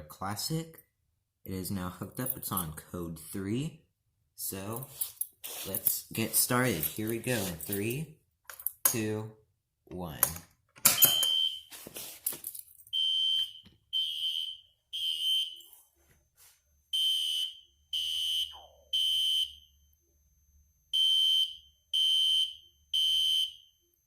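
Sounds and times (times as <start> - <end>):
fire alarm horn blasts: 12.9 - 15.8, 16.9 - 20.1, 20.9 - 23.9.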